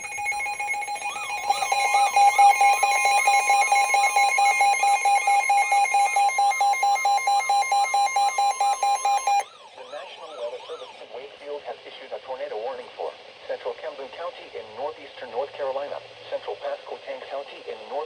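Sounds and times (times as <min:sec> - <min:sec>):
pulsing two-tone alarm beep: 0:00.0 - 0:09.4
rising and falling alarm tone: 0:00.0 - 0:10.0.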